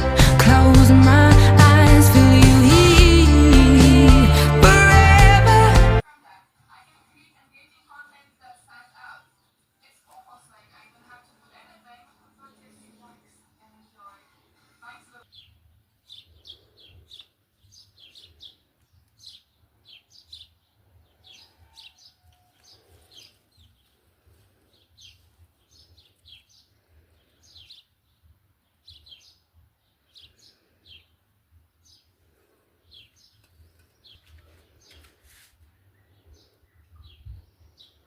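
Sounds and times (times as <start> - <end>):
small birds chirping: 11.6 - 38.0.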